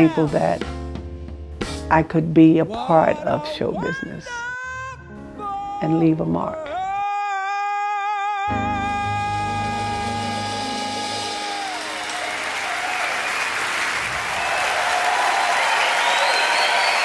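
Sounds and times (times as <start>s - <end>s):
woman singing with vibrato: 0.0s - 0.6s, 1.9s - 4.6s, 5.5s - 7.0s
audience applauding: 10.2s - 17.0s.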